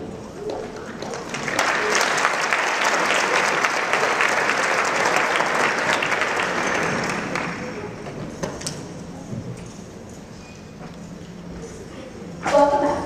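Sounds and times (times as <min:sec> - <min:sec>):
audience applauding: 0:00.4 - 0:08.0.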